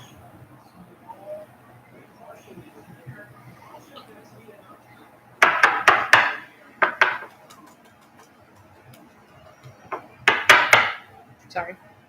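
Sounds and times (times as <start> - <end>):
cards tapping on tabletop: 5.4 - 7.3, 10.3 - 11.0.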